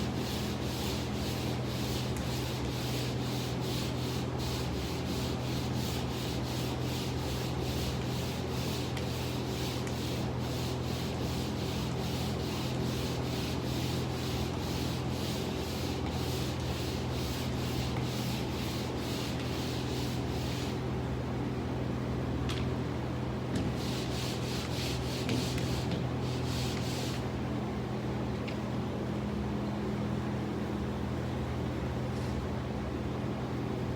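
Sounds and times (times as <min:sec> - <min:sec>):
pole sander rubbing drywall: 0:00.0 - 0:20.8, 0:23.6 - 0:27.3.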